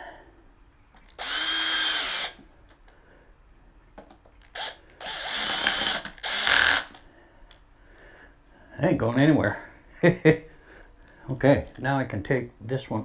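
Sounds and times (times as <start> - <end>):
power drill driving screws: 1.1 - 2.4, 4.5 - 7.0.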